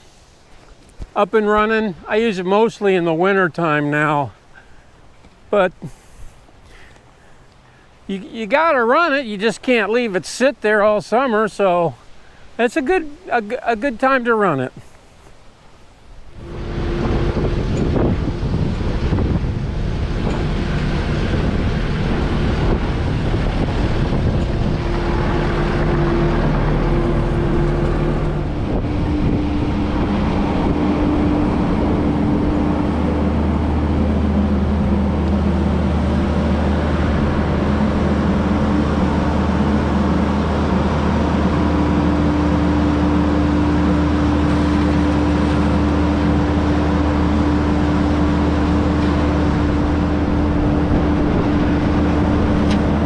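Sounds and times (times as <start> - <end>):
diesel engine running: 16.4 - 53.0.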